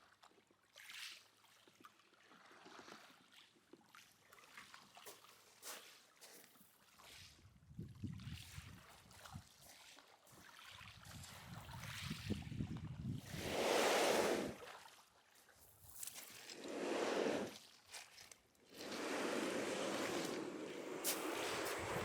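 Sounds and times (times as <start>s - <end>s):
wind rumble on microphone: 7.4s - 9.5s, 10.9s - 14.6s, 18.8s - 22.0s
water rushing and splashing: 13.3s - 14.6s, 16.5s - 17.6s, 18.7s - 22.0s.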